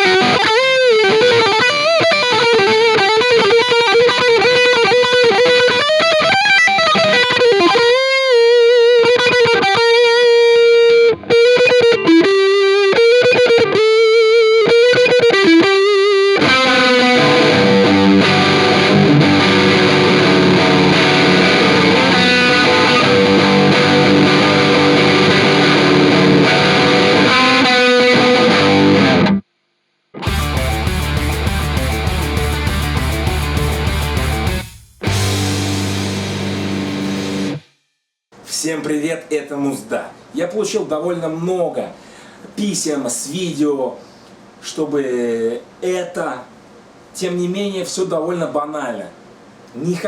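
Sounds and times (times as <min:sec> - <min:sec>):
distorted electric guitar: 0:00.0 - 0:29.4, 0:30.2 - 0:37.7
music: 0:00.0 - 0:29.4, 0:30.2 - 0:37.9.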